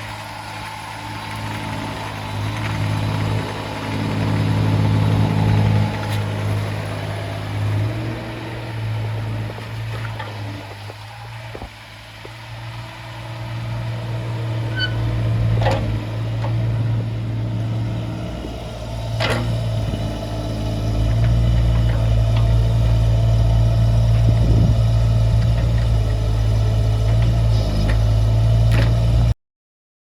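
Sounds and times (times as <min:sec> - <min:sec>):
diesel engine running: 0:00.0 - 0:29.4.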